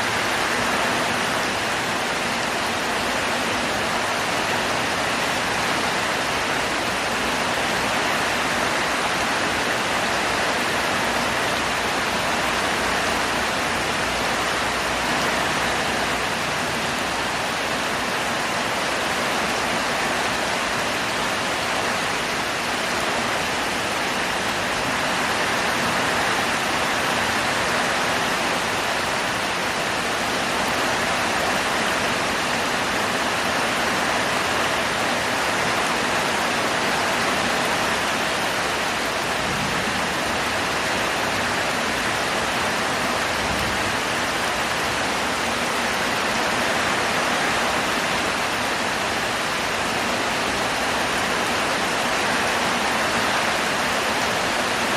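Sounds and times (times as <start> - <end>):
heavy rain pouring: 0.0 - 54.9.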